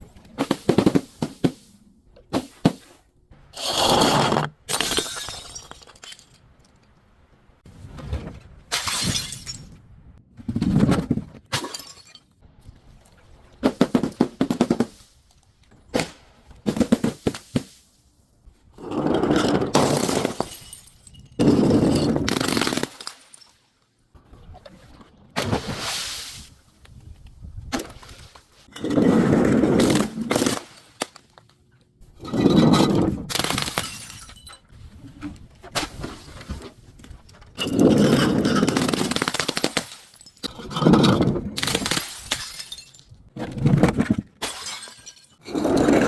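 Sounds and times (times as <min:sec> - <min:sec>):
glass bottles breaking and crushing: 0:04.7 - 0:06.5, 0:08.7 - 0:09.8, 0:11.5 - 0:12.4, 0:19.4 - 0:23.6, 0:32.2 - 0:34.7, 0:37.5 - 0:43.2, 0:44.3 - 0:45.5.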